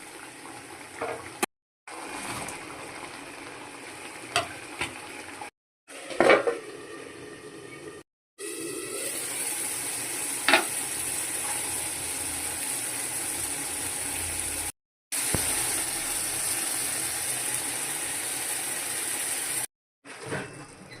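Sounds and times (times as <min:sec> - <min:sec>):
fish sizzling in hot oil: 0:08.4 - 0:19.7.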